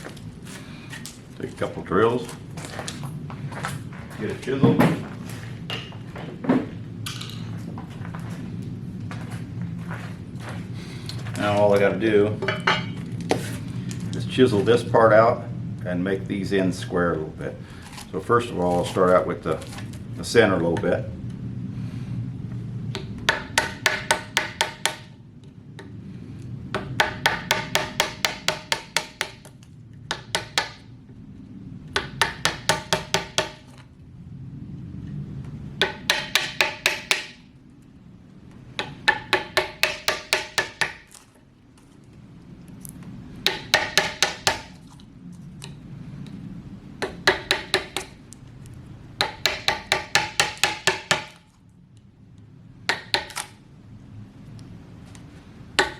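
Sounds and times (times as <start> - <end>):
hammer striking steel chisel: 35.8 - 37.4, 38.8 - 41.0, 43.4 - 44.7, 49.2 - 51.4.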